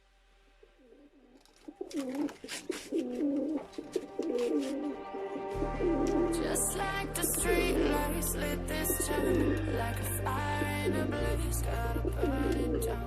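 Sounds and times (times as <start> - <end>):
pigeons cooing: 1.7 - 6.4.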